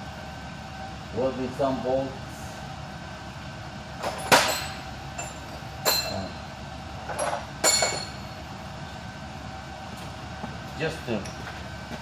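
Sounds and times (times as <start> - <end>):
steady low hum: 0.0 - 12.0
metal tools clinking and knocking: 4.0 - 6.3, 7.1 - 8.2.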